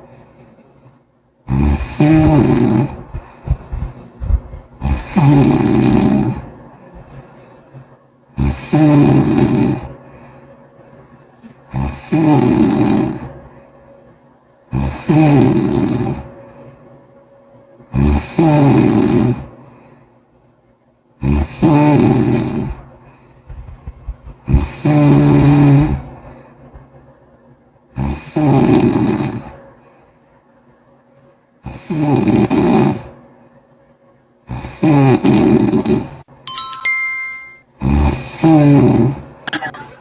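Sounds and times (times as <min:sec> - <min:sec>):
quiet breathing: 0:00.0 - 0:05.3, 0:06.4 - 0:08.1, 0:09.9 - 0:11.7, 0:13.3 - 0:14.2, 0:16.3 - 0:17.0, 0:19.5 - 0:20.4, 0:22.7 - 0:23.8, 0:25.9 - 0:27.0, 0:29.5 - 0:30.5
person snoring loudly: 0:01.5 - 0:06.5, 0:08.4 - 0:09.9, 0:11.7 - 0:13.3, 0:14.7 - 0:16.2, 0:17.9 - 0:19.5, 0:21.2 - 0:22.8, 0:24.4 - 0:26.2, 0:28.0 - 0:29.5, 0:31.7 - 0:33.1, 0:34.5 - 0:36.2, 0:37.8 - 0:39.2.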